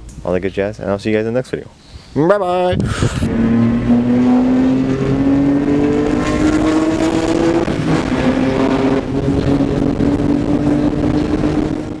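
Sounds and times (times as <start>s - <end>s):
car engine accelerating through gears: 2.8s - 12.0s.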